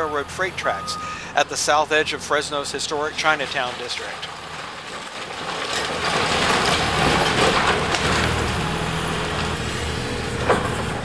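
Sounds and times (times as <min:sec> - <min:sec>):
heavy machine diesel engine: 0:00.0 - 0:11.0
debris crunching and clattering: 0:02.6 - 0:09.6.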